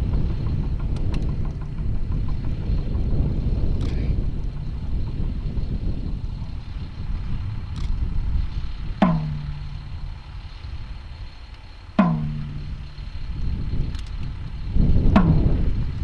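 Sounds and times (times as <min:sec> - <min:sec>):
deep drum strokes: 0:00.0 - 0:16.0
low rumbling noise: 0:00.0 - 0:16.0.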